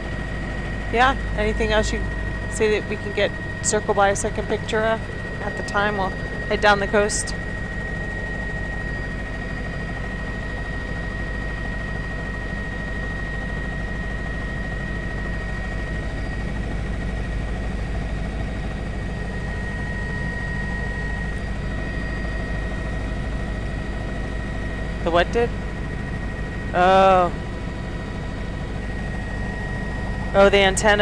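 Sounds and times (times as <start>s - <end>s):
thin high whine: 0.0s - 12.0s, 18.7s - 31.0s
helicopter engine and rotor drone: 0.0s - 31.0s.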